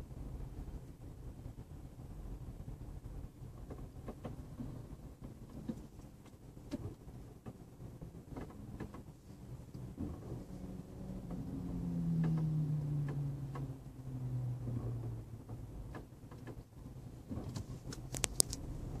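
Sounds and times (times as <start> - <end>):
car engine hum falling in pitch: 5.1 - 19.0.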